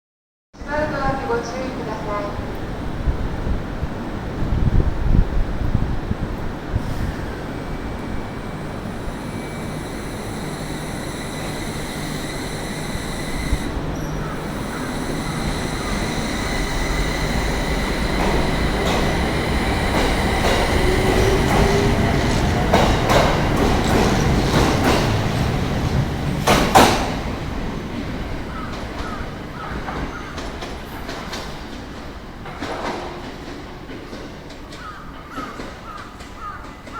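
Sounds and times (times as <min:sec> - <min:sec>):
electric train running: 0:06.8 - 0:28.7
wheels clacking over rail joints: 0:08.7 - 0:36.9.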